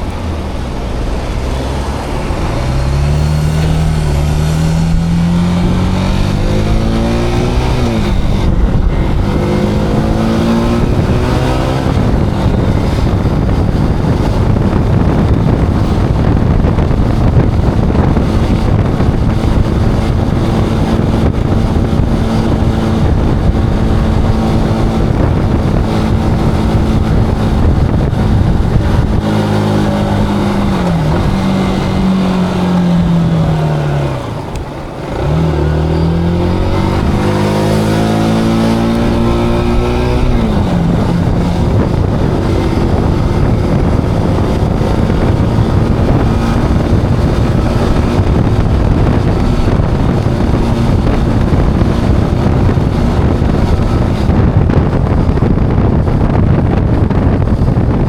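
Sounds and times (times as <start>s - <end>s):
motorcycle engine: 0.0s - 58.0s
wind noise on microphone: 0.0s - 58.0s.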